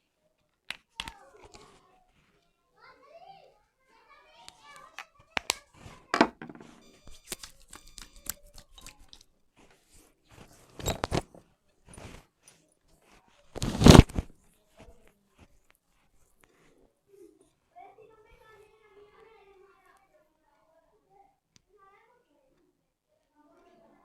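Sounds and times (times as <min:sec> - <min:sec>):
hair crackling snaps: 0:04.5 - 0:05.9, 0:13.6 - 0:14.3.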